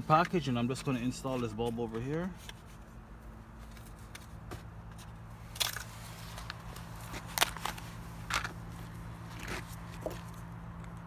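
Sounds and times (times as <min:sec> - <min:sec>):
packaging crinkling and tearing: 0:05.6 - 0:08.5.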